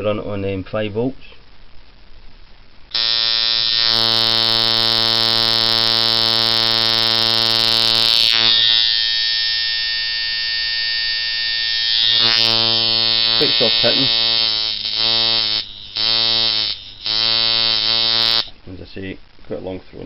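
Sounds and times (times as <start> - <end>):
tattoo machine buzzing: 2.9 - 18.5.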